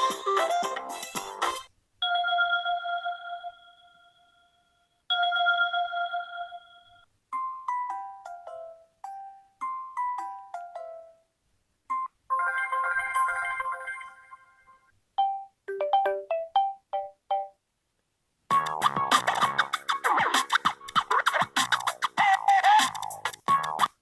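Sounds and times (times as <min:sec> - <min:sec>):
phone ringtones and notification tones: 0:00.0 - 0:04.4, 0:05.1 - 0:11.2, 0:11.9 - 0:17.6.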